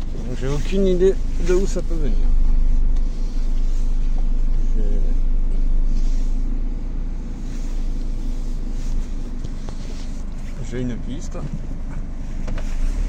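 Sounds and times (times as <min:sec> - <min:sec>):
road and engine rumble: 0:00.0 - 0:13.0.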